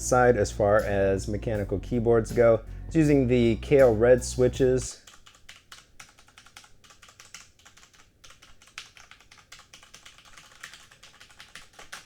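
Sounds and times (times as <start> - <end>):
rapid typing on mechanical keyboard: 5.0 - 12.0.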